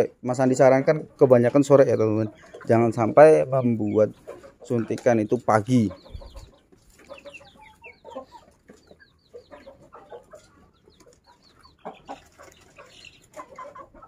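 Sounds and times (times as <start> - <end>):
chickens clucking: 0.0 - 14.0.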